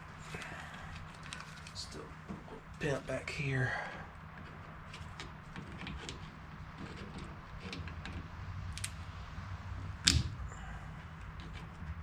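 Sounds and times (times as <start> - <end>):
metal pick clicking and scraping: 4.4 - 9.0.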